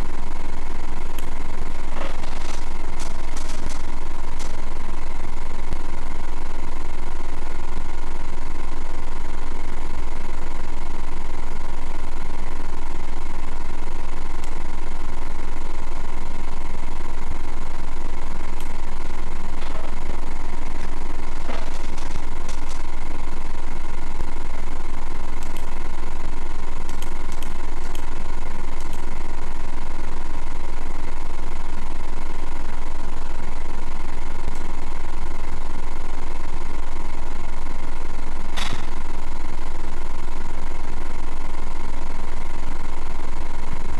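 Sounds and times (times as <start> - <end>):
low-pitched hum: 0.0 - 43.9
high whine: 14.2 - 30.7.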